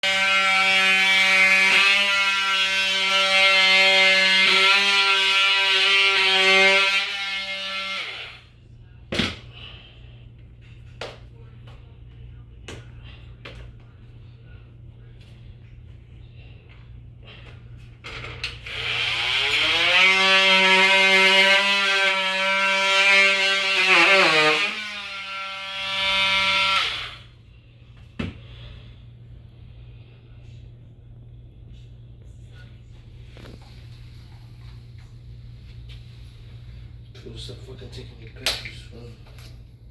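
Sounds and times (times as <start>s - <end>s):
power tool motor whining: 18.5s - 27.2s.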